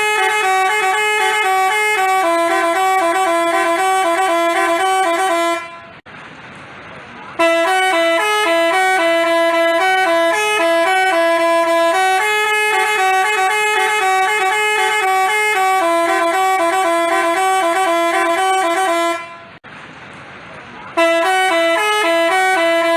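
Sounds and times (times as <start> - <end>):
multi-tone bus horn tune: 0.0 - 6.0, 7.3 - 19.6, 20.9 - 22.9.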